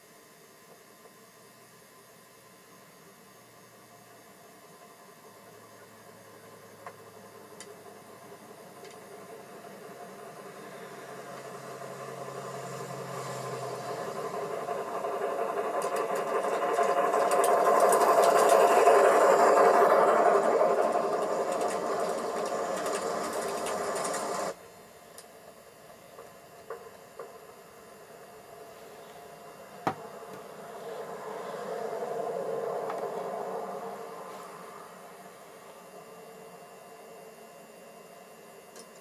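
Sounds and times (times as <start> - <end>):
model train running on track: 0.0 - 39.0.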